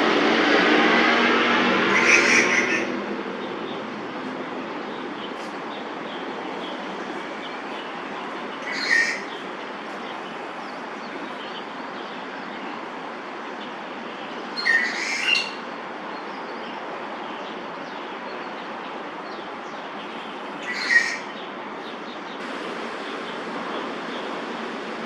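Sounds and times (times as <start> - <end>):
steady rushing noise: 0.0 - 14.5, 22.4 - 25.0
squeaky bird calls: 8.6 - 9.4, 14.6 - 15.6, 20.6 - 21.4.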